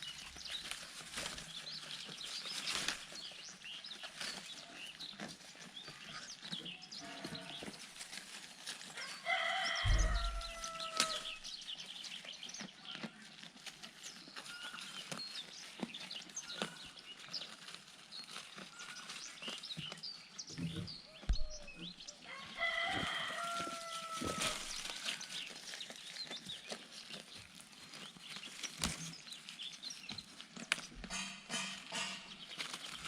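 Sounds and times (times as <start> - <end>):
small birds chirping: 0.0 - 33.0
rooster crowing: 9.0 - 11.4, 22.3 - 25.1
chickens clucking: 9.8 - 11.5, 30.5 - 32.5
low thumps: 9.9 - 10.7, 21.3 - 21.9.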